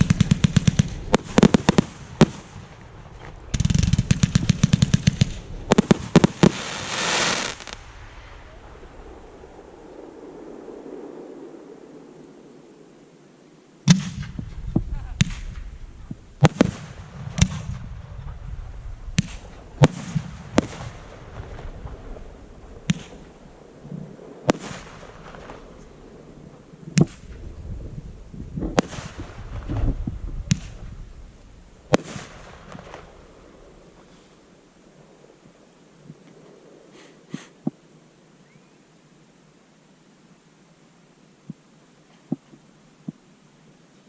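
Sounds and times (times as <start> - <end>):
fireworks bangs: 0.0 - 10.4, 13.8 - 15.8, 16.4 - 26.3, 26.9 - 27.7, 28.4 - 33.8
hissing crackle of fireworks: 0.0 - 12.5, 13.8 - 35.7
low rumble: 2.6 - 6.3, 7.7 - 16.4, 17.5 - 34.0.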